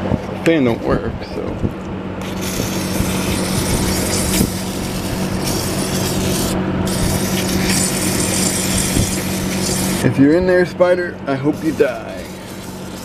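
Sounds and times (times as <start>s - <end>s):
aerosol can spraying hiss: 2.4s - 10.0s.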